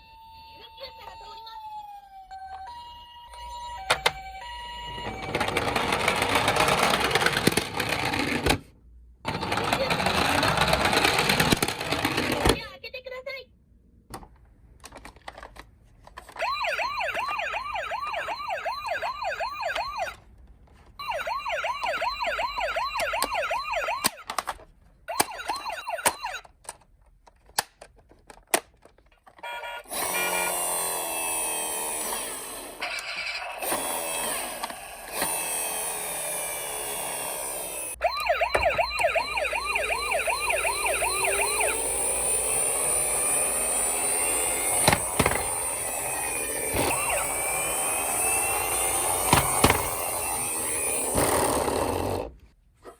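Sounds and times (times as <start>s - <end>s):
toy electronic sirens warbling: 0.0s - 7.1s, 16.4s - 20.2s, 21.0s - 24.4s, 25.1s - 26.5s, 29.4s - 52.2s.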